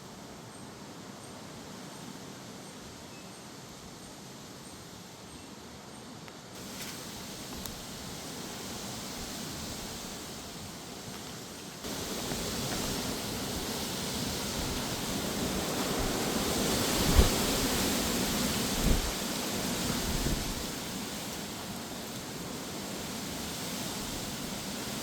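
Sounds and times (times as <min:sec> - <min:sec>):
gusty wind with rain: 0:06.6 - 0:25.0
wind gusts thudding on microphone: 0:06.6 - 0:25.0.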